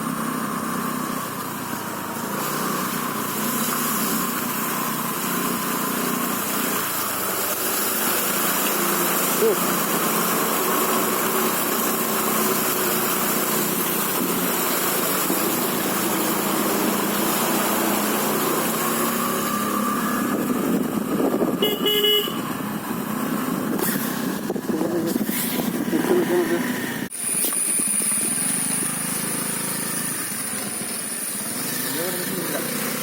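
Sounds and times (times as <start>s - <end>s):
vehicle engine running: 0.0s - 33.0s
short horn toot: 21.6s - 22.4s.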